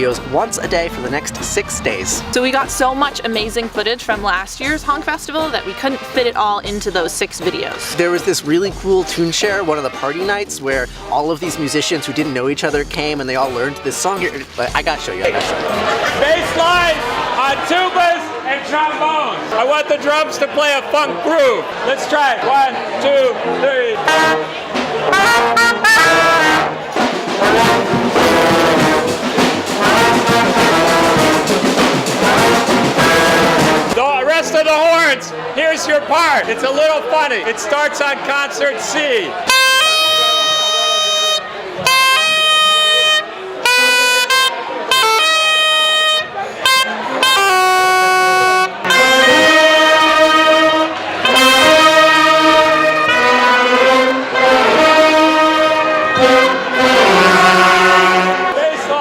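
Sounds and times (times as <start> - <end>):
horn section playing held notes: 0.0 - 6.5, 22.4 - 34.6, 39.3 - 59.0
drums playing funk groove: 0.0 - 17.7, 24.1 - 34.0
tubas and trombones bass line: 0.0 - 17.7, 22.7 - 34.9, 39.3 - 59.0.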